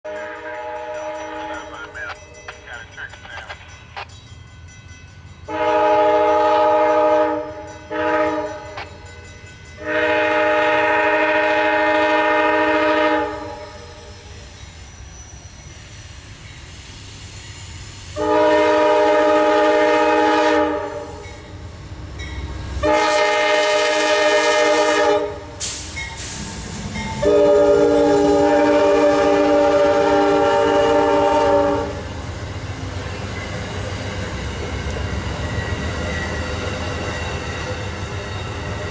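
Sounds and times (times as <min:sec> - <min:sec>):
low rumble of a train: 0:00.0 - 0:38.9
locomotive air horn blasts: 0:00.1 - 0:01.7, 0:05.5 - 0:08.7, 0:09.8 - 0:14.0, 0:18.2 - 0:21.3, 0:22.8 - 0:25.6, 0:27.2 - 0:32.0.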